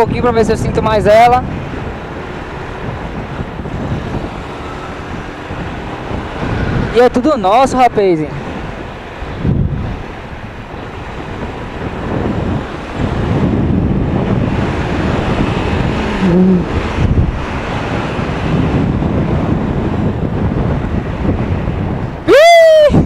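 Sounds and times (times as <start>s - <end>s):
wind buffeting microphone: 0.0s - 23.0s
motorcycle engine running: 8.6s - 20.3s.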